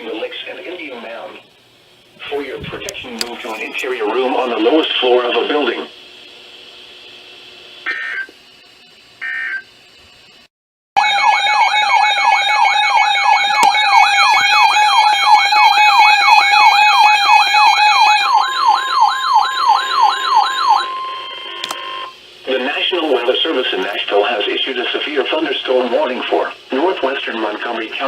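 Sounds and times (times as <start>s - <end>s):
wailing electronic alert siren: 11.0s - 22.1s
electronic data-tone bursts: 17.8s - 22.2s.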